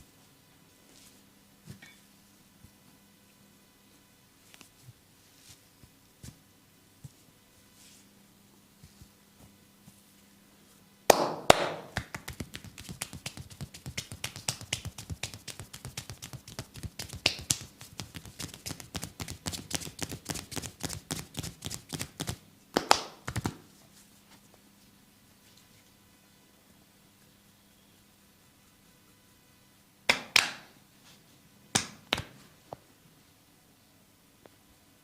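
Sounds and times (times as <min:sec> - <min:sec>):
hands slapping body in massage: 0:11.1 - 0:23.6, 0:30.1 - 0:30.7, 0:31.8 - 0:32.4.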